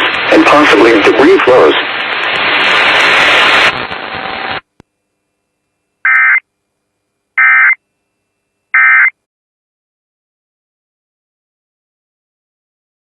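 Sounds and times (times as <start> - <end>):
radio static hiss: 0.0 - 4.8
harsh buzzing data bursts: 6.0 - 6.4.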